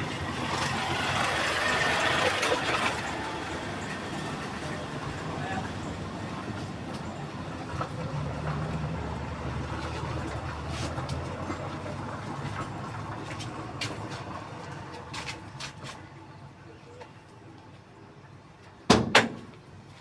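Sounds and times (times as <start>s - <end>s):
low rumble of car: 0.0s - 16.9s.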